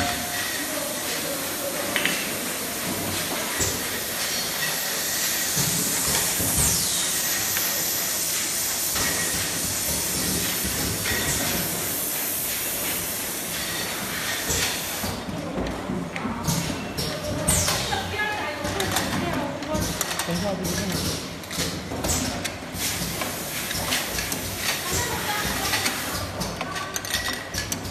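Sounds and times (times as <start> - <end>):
machine clicks and knocks: 23.7 - 27.9.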